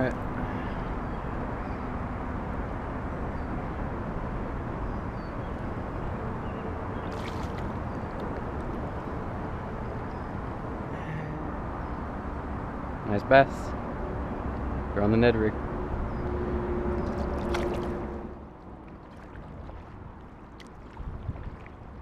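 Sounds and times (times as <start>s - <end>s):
water rushing: 7.0s - 9.6s, 16.5s - 22.0s
wind on microphone: 20.8s - 22.0s.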